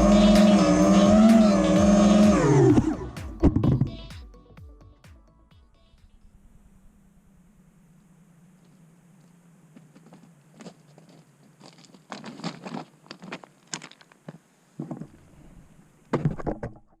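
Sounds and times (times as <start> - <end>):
faint low hum: 5.6 - 16.2
crunching and rustling clicks: 10.0 - 15.2.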